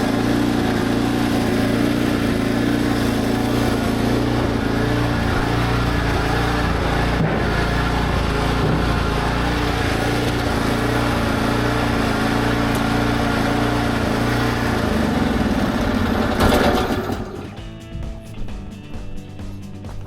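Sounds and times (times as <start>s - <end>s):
small engine running: 0.0s - 20.0s.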